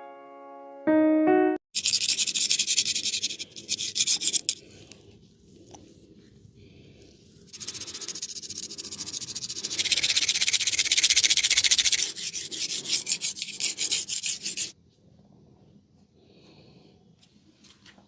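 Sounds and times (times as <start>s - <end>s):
fast rasping rubbing strokes: 1.8s - 5.0s, 7.4s - 14.8s.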